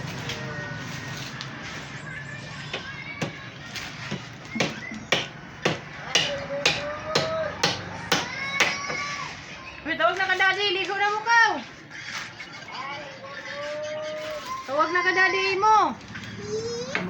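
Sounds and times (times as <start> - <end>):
hammer blows: 4.1 - 9.0.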